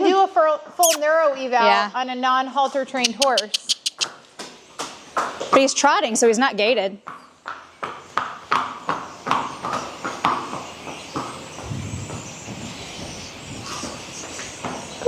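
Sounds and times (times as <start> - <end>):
horse hooves trotting: 3.0 - 5.8, 7.0 - 12.8.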